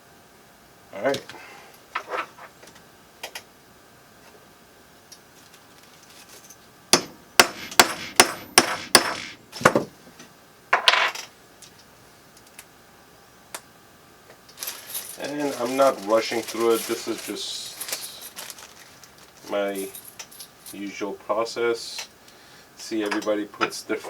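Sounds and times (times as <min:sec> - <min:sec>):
rough handling noise: 0:14.5 - 0:20.8.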